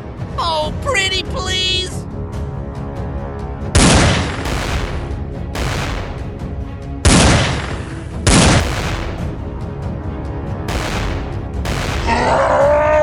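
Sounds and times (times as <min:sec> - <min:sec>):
action background music: 0:00.0 - 0:13.0
heavy gunshot-like blasts: 0:03.8 - 0:09.7, 0:10.7 - 0:12.7.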